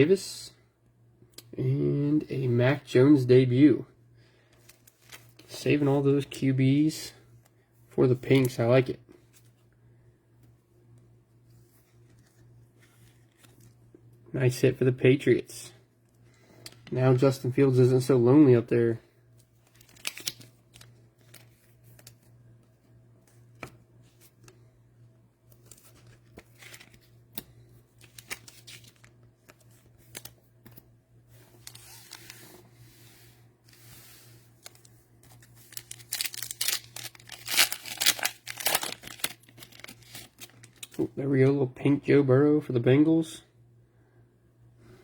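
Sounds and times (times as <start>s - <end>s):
low steady hum: 0.0s - 45.0s
cellophane tearing and crinkling: 4.6s - 5.6s, 19.6s - 22.2s, 25.5s - 27.2s, 28.0s - 30.4s, 31.4s - 32.4s, 34.6s - 41.0s.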